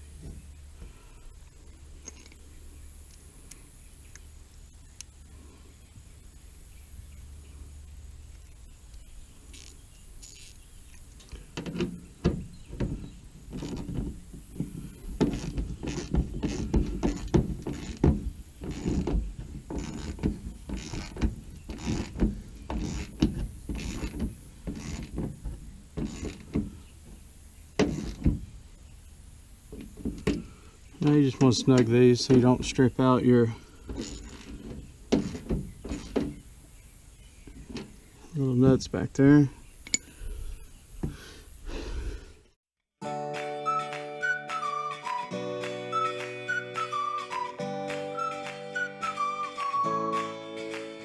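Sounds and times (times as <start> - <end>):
knocks taps and light clatter: 11.6 - 27.2.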